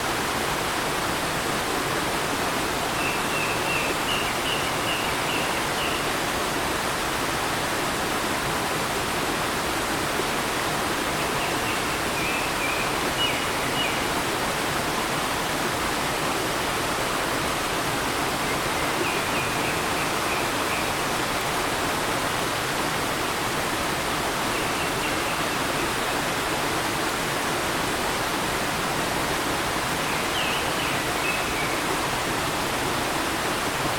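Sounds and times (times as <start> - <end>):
stream flowing over rocks: 0.0 - 33.9
songbird singing: 30.1 - 31.8.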